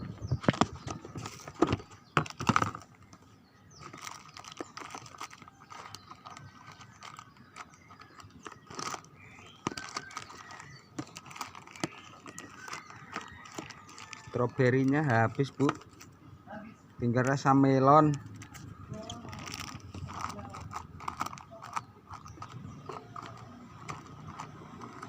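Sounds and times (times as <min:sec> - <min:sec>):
plastic rustling: 0:00.4 - 0:03.2, 0:03.8 - 0:16.2, 0:18.0 - 0:25.0
small items clicking and knocking: 0:03.8 - 0:16.1, 0:18.1 - 0:25.0.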